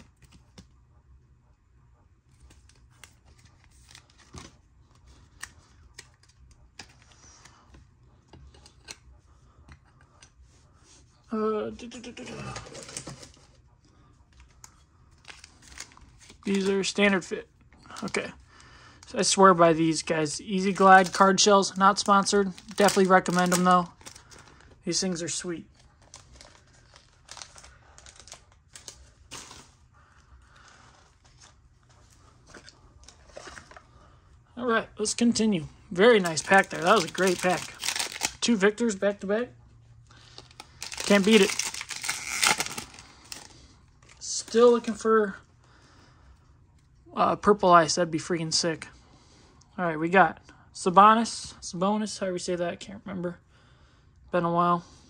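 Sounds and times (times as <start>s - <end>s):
plastic rustling of cards: 2.3s - 7.6s, 12.1s - 13.6s, 14.2s - 17.2s, 17.8s - 19.4s, 20.5s - 34.0s, 35.0s - 39.2s, 40.1s - 45.0s.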